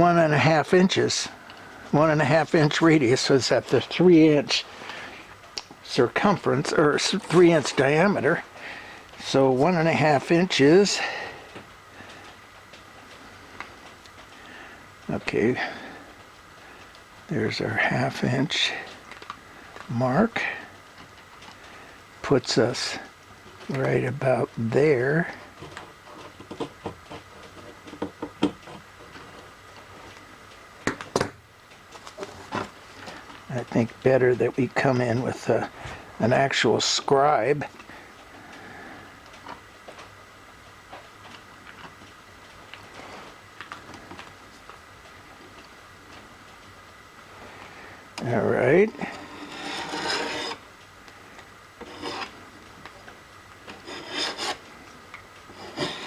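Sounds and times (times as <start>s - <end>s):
scribe scratching sheet metal: 48.9s - 50.6s, 51.8s - 52.4s, 53.8s - 54.6s, 55.5s - 56.0s.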